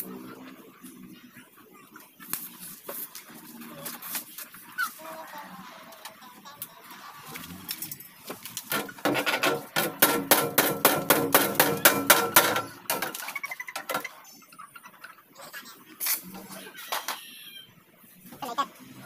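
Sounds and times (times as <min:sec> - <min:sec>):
hammer striking sheet metal: 0:08.7 - 0:13.2.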